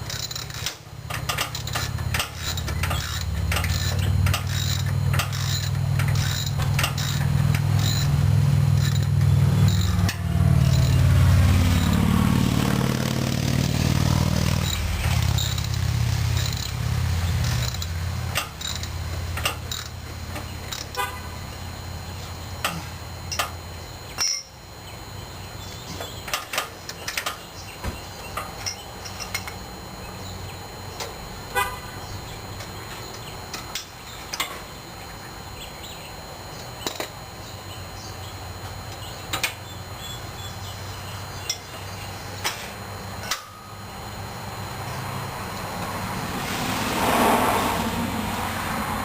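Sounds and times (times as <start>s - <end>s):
metal tools clinking and knocking: 0.0s - 11.0s, 17.4s - 21.0s, 24.2s - 24.6s, 28.3s - 29.6s
steady low hum: 0.0s - 49.0s.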